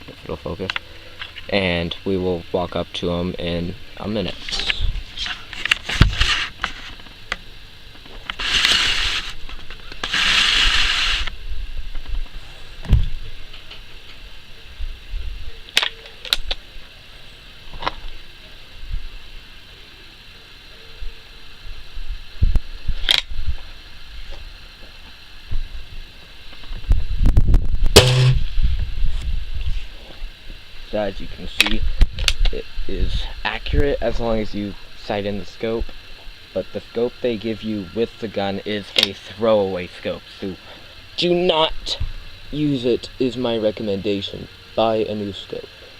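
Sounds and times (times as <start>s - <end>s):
rasping mechanical noise: 0.6s - 11.4s, 27.9s - 28.6s
hiss: 4.2s - 11.4s
wind and handling thumps on microphone: 4.5s - 7.2s, 10.7s - 13.9s, 22.1s - 24.4s, 26.6s - 29.9s, 31.7s - 32.6s
air rifle crack: 28.0s - 28.5s.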